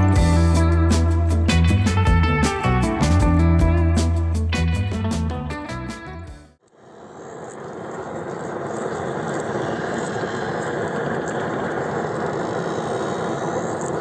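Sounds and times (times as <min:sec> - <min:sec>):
guitar music: 0:00.0 - 0:06.6
woodworking machine droning: 0:06.7 - 0:14.0.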